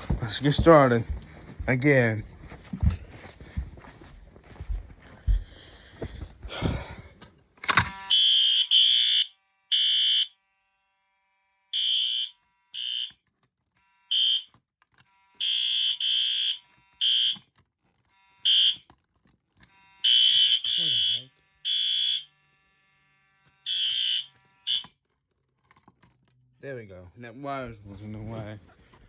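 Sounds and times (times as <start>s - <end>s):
fire alarm horns pulsing: 8.0s - 13.2s, 13.8s - 17.4s, 18.0s - 18.9s, 19.6s - 25.0s.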